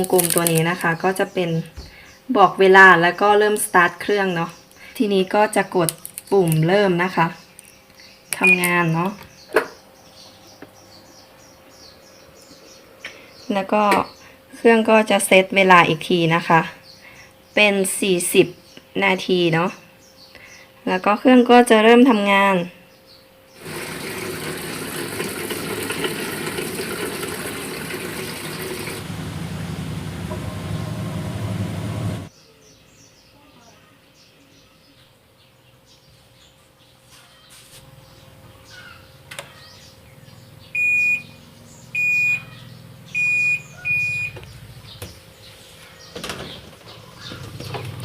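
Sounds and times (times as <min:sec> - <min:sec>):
washing machine beeping: 0:08.4 - 0:08.8, 0:40.8 - 0:44.5
washing machine filling with water: 0:23.6 - 0:32.3.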